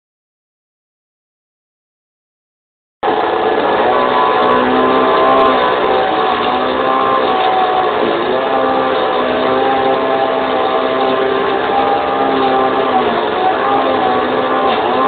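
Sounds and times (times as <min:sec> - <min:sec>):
small petrol engine running: 0:03.0 - 0:15.0.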